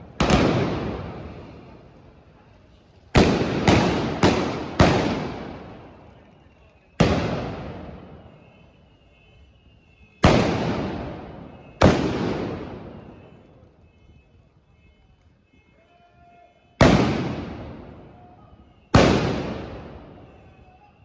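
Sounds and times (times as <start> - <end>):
blunderbuss blasts echoing: 3.2 - 6.0, 10.2 - 13.4, 16.8 - 20.5.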